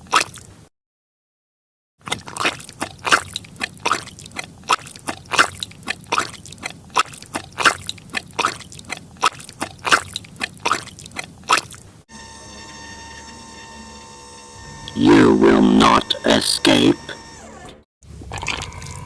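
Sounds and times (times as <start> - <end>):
footsteps squelching in mud: 2.1 - 11.9.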